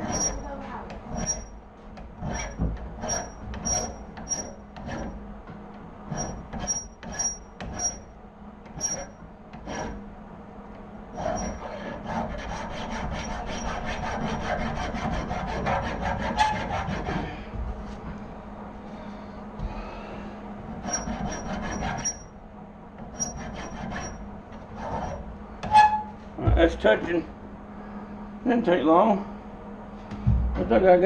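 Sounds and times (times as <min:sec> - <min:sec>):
thin high squeal: 0:00.0 - 0:00.4, 0:03.0 - 0:04.6, 0:08.8 - 0:09.2, 0:20.8 - 0:22.3, 0:23.1 - 0:24.2, 0:24.9 - 0:26.2
file scraping metal: 0:00.0 - 0:01.6, 0:02.2 - 0:05.2, 0:06.1 - 0:08.1, 0:08.7 - 0:10.0, 0:11.1 - 0:17.4, 0:20.7 - 0:22.4, 0:23.0 - 0:26.2.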